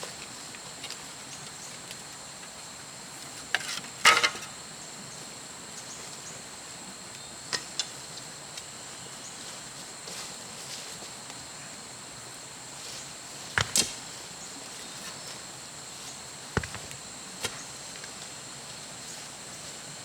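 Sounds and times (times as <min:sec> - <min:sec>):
insects droning: 0:00.0 - 0:20.0.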